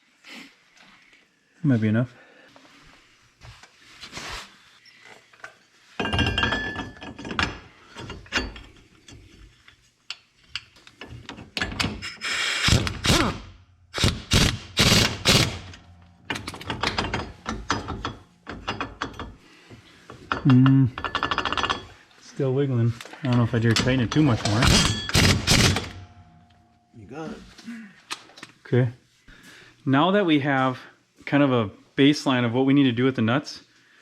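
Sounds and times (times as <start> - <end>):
hand tools knocking and scraping metal: 5.4 - 13.4, 14.0 - 22.0, 23.3 - 26.6.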